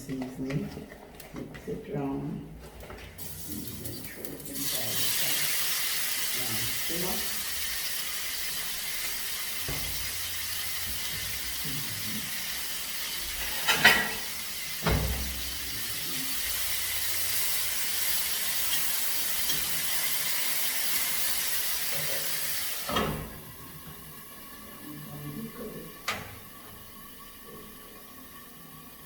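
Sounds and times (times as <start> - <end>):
food sizzling in hot oil: 3.2 - 24.6.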